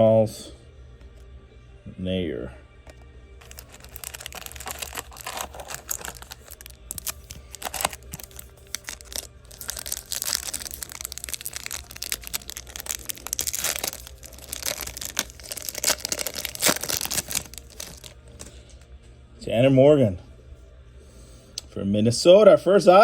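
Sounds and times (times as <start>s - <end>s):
cards scraping and clicking: 2.9s - 9.8s
foil wrapper crinkling and tearing: 3.4s - 18.6s.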